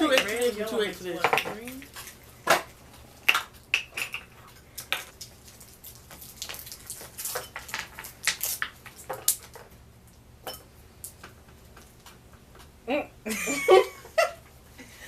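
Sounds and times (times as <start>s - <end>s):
candy wrappers crinkling: 4.5s - 9.6s.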